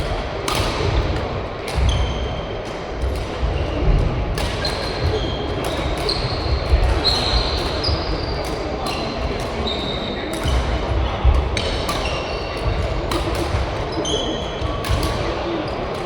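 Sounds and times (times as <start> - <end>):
racket hitting shuttlecock: 0.0 - 3.6, 4.3 - 7.8, 10.3 - 15.3.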